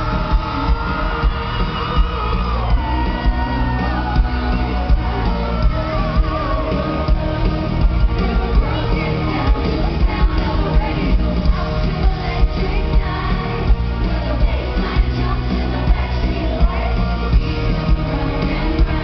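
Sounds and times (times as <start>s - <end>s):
crowd shouting along: 0.0s - 10.1s
heavy drum beat: 0.0s - 19.0s
person singing: 0.0s - 19.0s.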